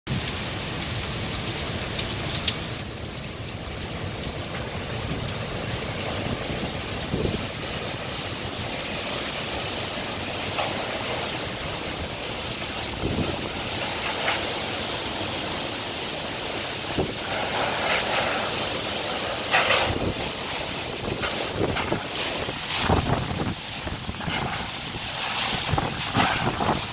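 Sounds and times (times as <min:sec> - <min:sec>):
wind and rain rushing: 0:00.1 - 0:26.9
knocks and rattles: 0:17.0 - 0:26.9.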